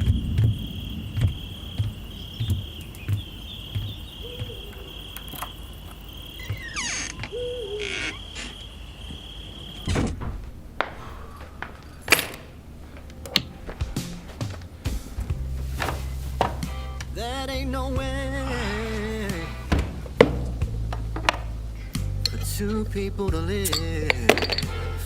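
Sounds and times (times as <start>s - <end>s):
footsteps: 0.0s - 9.3s, 10.0s - 24.8s
owl hooting: 0.0s - 10.0s
crickets trilling: 0.0s - 25.0s
heavy thunk: 9.9s - 12.6s, 19.7s - 21.5s.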